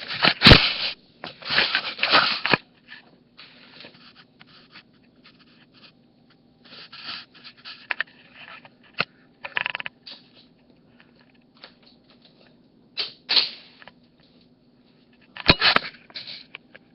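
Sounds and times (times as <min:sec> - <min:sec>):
scuffs scratches and rustles: 0:00.0 - 0:06.0, 0:06.6 - 0:08.8.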